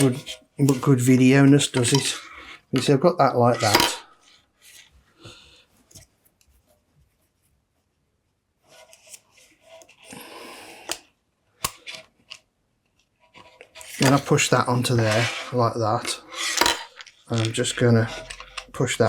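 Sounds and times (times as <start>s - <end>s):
hands handling wires: 13.3s - 19.0s.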